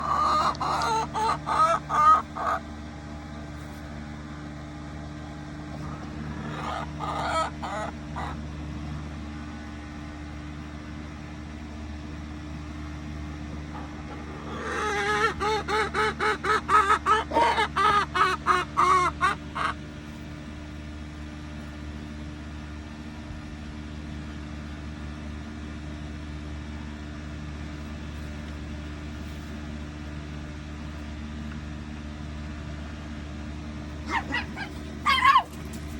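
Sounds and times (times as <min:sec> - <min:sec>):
hen clucking: 0:00.0 - 0:02.6, 0:05.8 - 0:08.4, 0:13.7 - 0:19.8, 0:34.1 - 0:35.7
steady low hum: 0:00.0 - 0:35.9.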